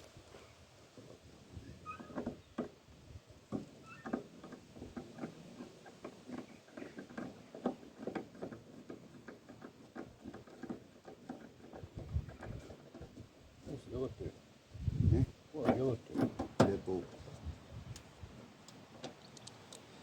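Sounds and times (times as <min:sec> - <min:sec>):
brief squeaks: 0:01.6 - 0:02.5
hand tools clicking and knocking: 0:03.5 - 0:13.2.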